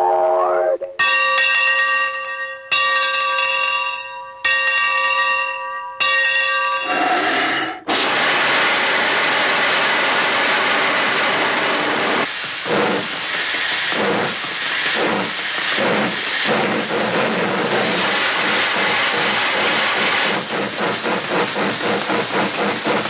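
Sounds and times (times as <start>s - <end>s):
loud steady hiss: 7.9s - 23.0s.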